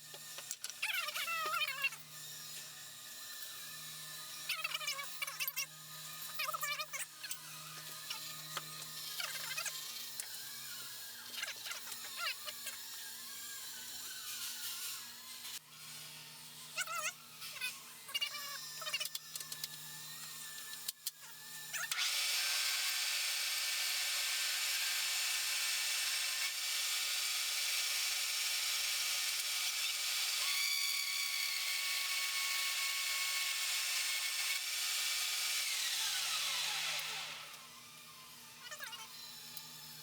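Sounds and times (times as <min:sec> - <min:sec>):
lathe running with high whine: 0:22.0 - 0:38.6.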